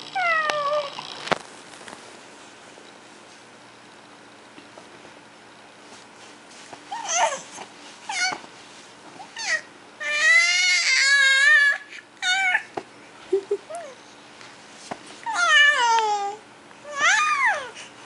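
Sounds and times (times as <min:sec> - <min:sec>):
baby squealing and cooing: 0:06.9 - 0:08.4, 0:09.2 - 0:12.7, 0:15.2 - 0:17.8.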